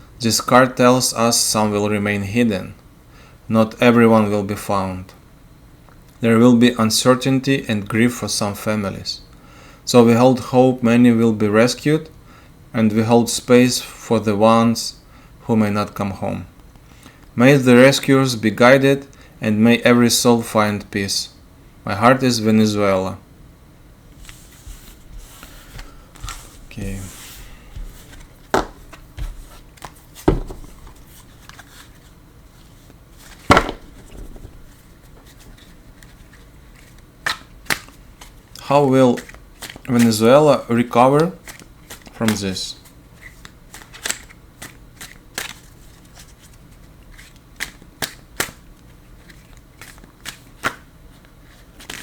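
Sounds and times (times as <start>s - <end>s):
cards rustling: 24.2s - 40.4s, 41.2s - 52.0s
cards tapping on table: 27.8s - 29.4s, 30.3s - 31.0s, 33.5s - 34.8s.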